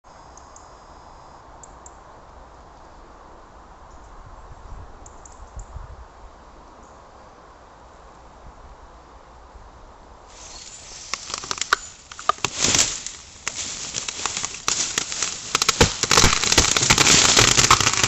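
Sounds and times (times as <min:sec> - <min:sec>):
faint outdoor hiss: 0:00.0 - 0:17.8
tiny high clicks: 0:10.3 - 0:18.0.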